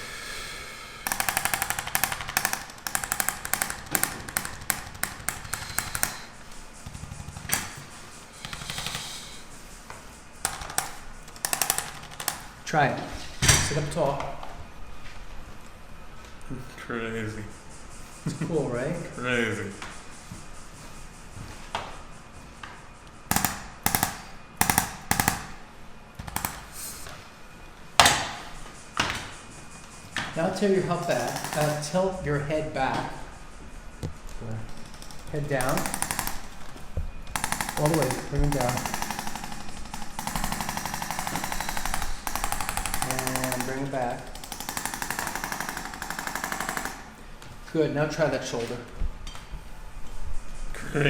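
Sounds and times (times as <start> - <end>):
rapid machine hammering: 1.0 - 12.7, 23.3 - 27.1, 30.4 - 32.2, 34.7 - 47.2
sharp rattling knocks: 1.1 - 12.7, 23.3 - 25.6, 26.2 - 27.1, 28.0 - 32.0, 34.0 - 47.2.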